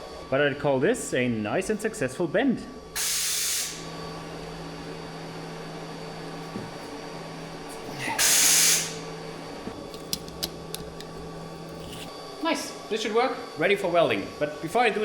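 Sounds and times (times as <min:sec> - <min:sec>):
air hissing: 0:03.0 - 0:03.9, 0:08.1 - 0:09.1
machine hum: 0:03.7 - 0:08.2, 0:08.8 - 0:15.0.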